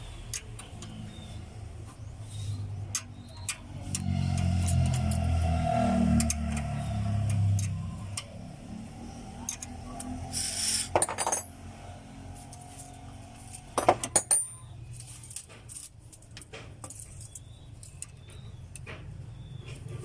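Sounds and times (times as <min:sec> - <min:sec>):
metal tools clinking: 0:02.5 - 0:05.4, 0:09.4 - 0:11.6, 0:12.3 - 0:18.4.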